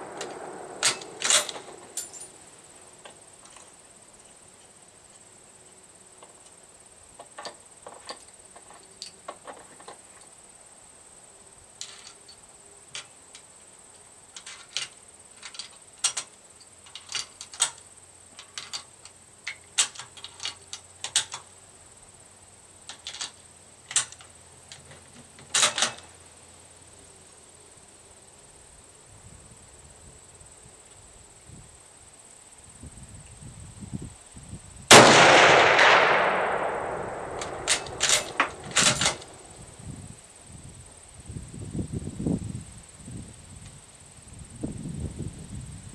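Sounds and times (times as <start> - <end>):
faint high whine: 0.0 - 4.3
rifle bolt clicks and knocks: 35.8 - 39.4.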